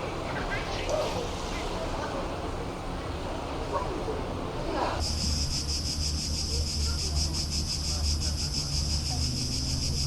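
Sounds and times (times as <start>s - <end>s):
cicadas buzzing: 5.0s - 10.0s.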